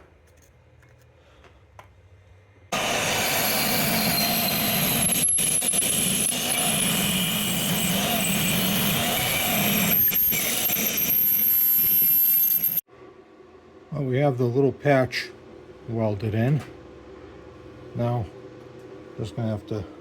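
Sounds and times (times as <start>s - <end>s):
angle grinder cutting steel: 2.7s - 12.8s.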